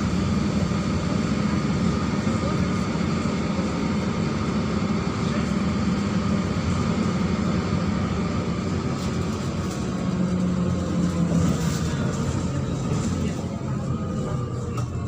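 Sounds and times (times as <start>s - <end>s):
bus engine droning: 0.0s - 15.0s
road and cabin noise: 0.0s - 15.0s.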